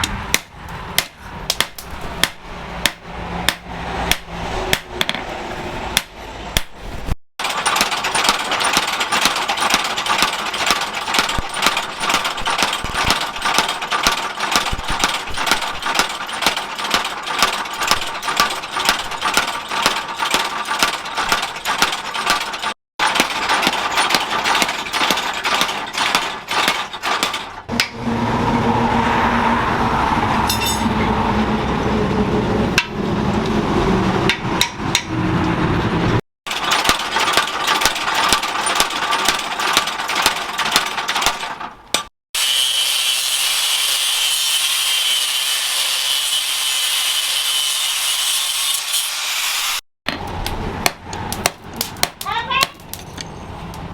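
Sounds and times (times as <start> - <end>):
hammer ringing on steel: 30.5 - 31.0.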